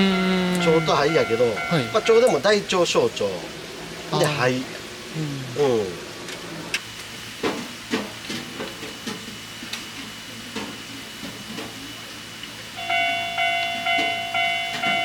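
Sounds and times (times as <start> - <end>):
pulsing electronic ringing tone: 0.0 - 2.6, 12.8 - 15.0.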